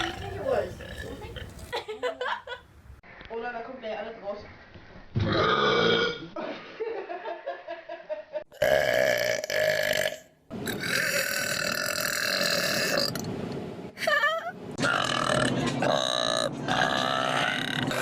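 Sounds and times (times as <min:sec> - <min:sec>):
loud drawn-out burps: 0:00.0 - 0:01.7, 0:05.2 - 0:06.3, 0:08.5 - 0:13.2, 0:14.8 - 0:18.0.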